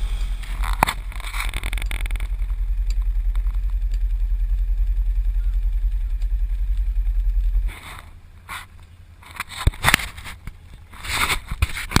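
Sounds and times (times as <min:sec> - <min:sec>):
scraping and rustling: 0:00.0 - 0:03.8, 0:07.5 - 0:12.0
atv engine running: 0:00.0 - 0:10.7.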